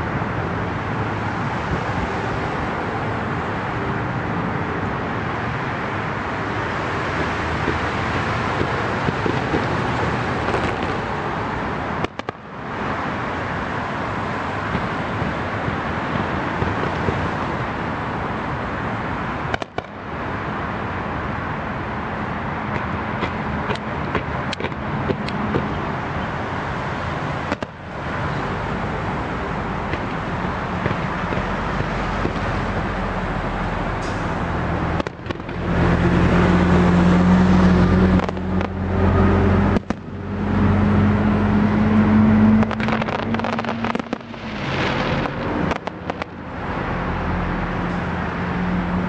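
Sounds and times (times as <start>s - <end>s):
road traffic roar: 0.0s - 49.0s
distant fireworks popping: 7.4s - 11.4s, 12.0s - 12.7s, 14.6s - 17.6s, 19.4s - 20.1s, 22.7s - 26.3s, 27.3s - 40.8s, 42.4s - 46.8s.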